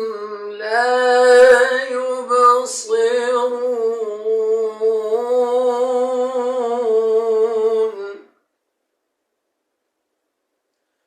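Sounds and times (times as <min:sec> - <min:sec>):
person reciting in melodic chant: 0:00.0 - 0:08.4.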